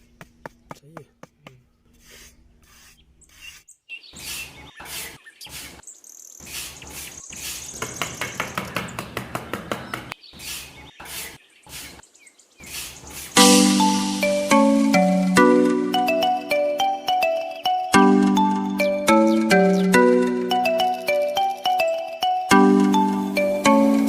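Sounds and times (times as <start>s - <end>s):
birds chirping: 1.6s - 24.0s
chiming marimba-like music: 13.4s - 24.0s.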